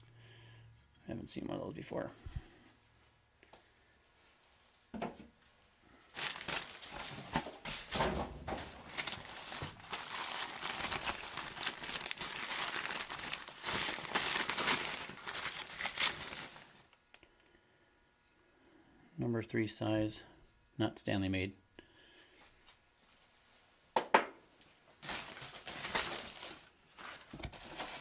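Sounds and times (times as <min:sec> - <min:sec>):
packing paper crinkling: 0:06.0 - 0:17.0, 0:24.9 - 0:28.0.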